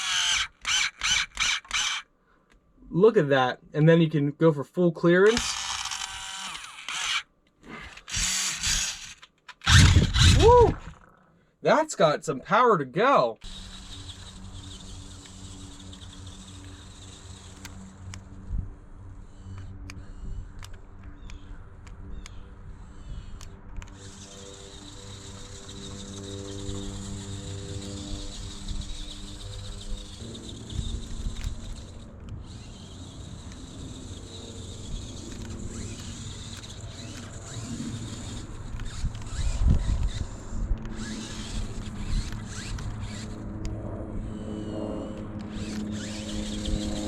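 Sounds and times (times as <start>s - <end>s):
electric motor rumbling: 0.0s - 2.0s, 5.3s - 11.2s, 13.4s - 47.0s
sharp clicks: 5.2s - 11.2s, 23.3s - 43.8s.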